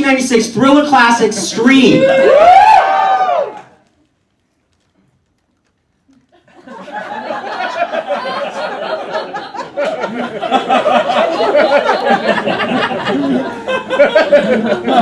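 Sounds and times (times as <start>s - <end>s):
audience laughing and chattering: 6.1s - 15.0s.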